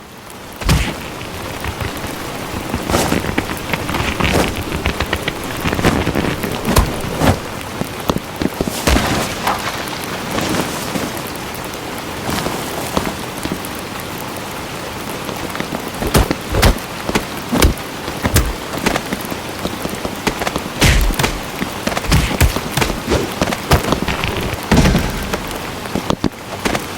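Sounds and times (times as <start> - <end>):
rain-like hiss: 0.0 - 26.9
sharp hits and thumps: 0.6 - 7.6, 16.0 - 19.0, 20.2 - 26.8.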